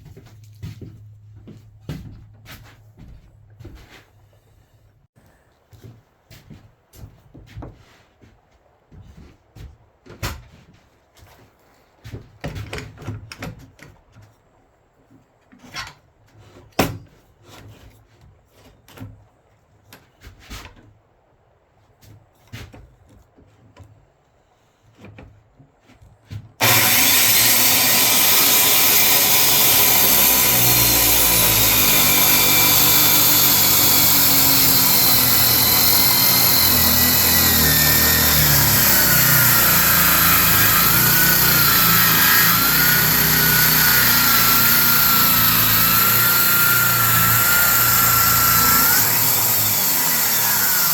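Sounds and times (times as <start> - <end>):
circular saw cutting wood: 26.6 - 50.9.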